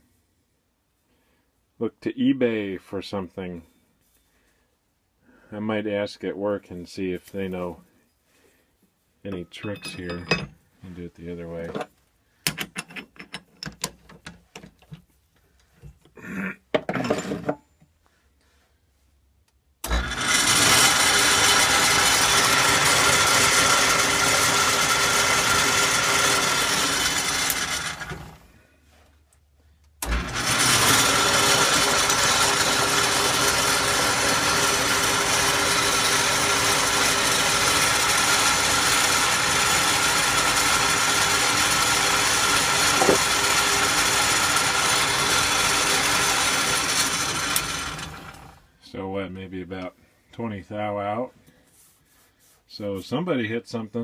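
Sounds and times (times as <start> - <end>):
lathe spinning: 19.9 - 28.4, 30.0 - 48.6.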